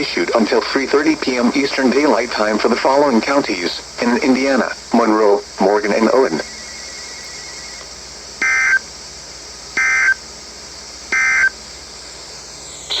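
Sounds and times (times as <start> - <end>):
warbling digital data tones: 5.9 - 7.8, 12.6 - 13.0.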